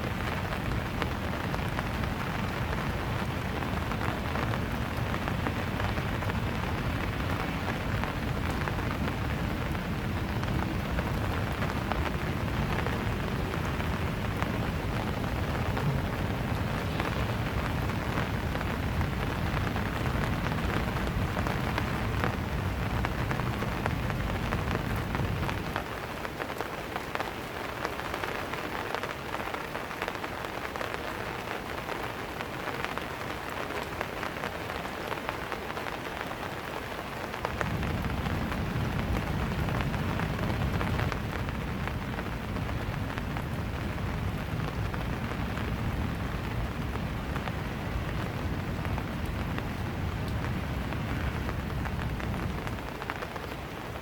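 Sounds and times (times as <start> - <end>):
rain pattering: 0.0 - 54.0
low rumble: 12.9 - 20.2.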